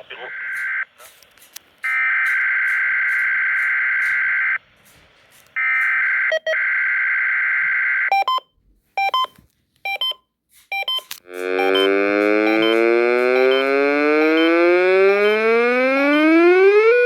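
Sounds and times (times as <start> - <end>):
short electronic beeps: 9.0 - 11.9, 12.5 - 12.8
buzzing two-tone data burst: 11.3 - 14.6
loud alert tone: 11.3 - 15.4.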